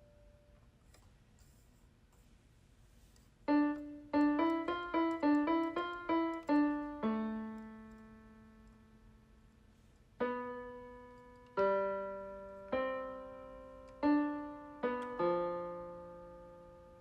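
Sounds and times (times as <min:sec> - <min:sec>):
solo piano: 0:00.0 - 0:00.6, 0:03.4 - 0:17.0.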